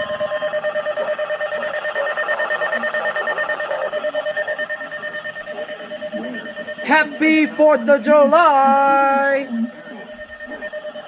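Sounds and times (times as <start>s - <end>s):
electronic alert tone beeping: 6.3s - 9.6s.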